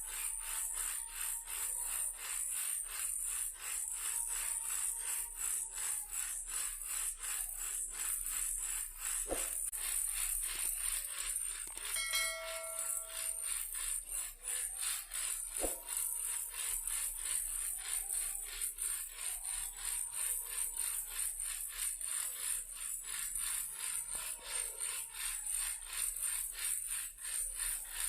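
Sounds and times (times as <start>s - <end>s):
toy car rattling: 0.0s - 28.0s
short chiming tone: 11.8s - 13.5s.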